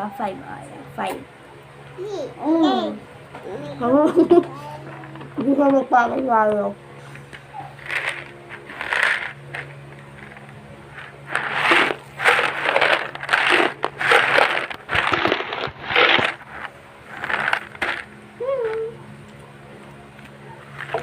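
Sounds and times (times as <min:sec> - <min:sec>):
chocolate biscuits being crunched: 0:07.8 - 0:10.4, 0:11.3 - 0:18.1.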